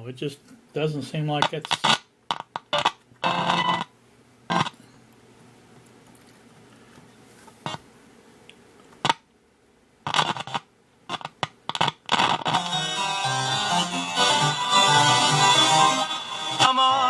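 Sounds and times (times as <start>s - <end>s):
radio speaker crackly bursts: 1.2s - 3.9s, 10.1s - 16.7s.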